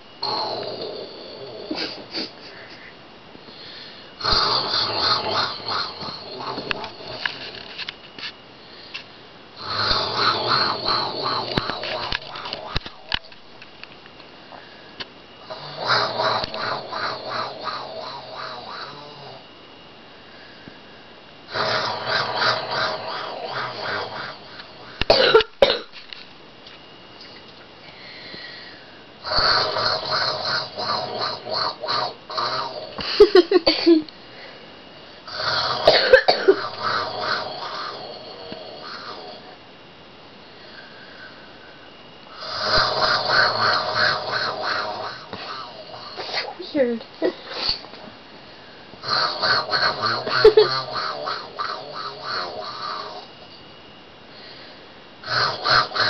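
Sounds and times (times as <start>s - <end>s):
girl snoring: 0.0s - 2.9s, 3.6s - 7.7s, 9.6s - 13.2s, 15.4s - 19.5s, 21.5s - 25.8s, 28.1s - 34.1s, 35.3s - 39.6s, 42.3s - 46.7s, 49.0s - 53.3s, 55.2s - 56.0s
quiet breathing: 1.0s - 4.3s, 8.5s - 13.2s, 14.4s - 15.5s, 19.0s - 21.9s, 27.8s - 29.5s, 34.2s - 35.4s, 40.4s - 46.6s, 54.2s - 56.0s
girl coughing: 25.1s - 25.9s, 33.5s - 34.1s, 35.9s - 36.8s.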